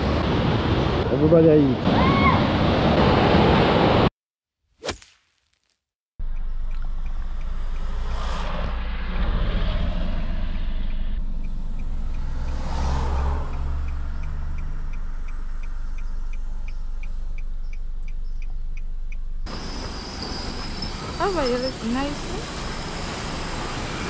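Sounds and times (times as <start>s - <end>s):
car road and engine noise: 0.0s - 4.1s, 6.2s - 24.0s
light even ticking: 6.2s - 7.9s, 10.9s - 19.5s.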